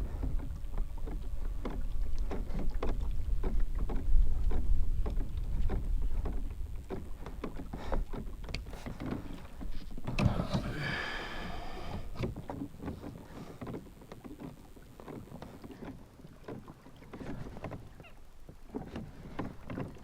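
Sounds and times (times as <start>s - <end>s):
water slapping against hull: 0.0s - 20.0s.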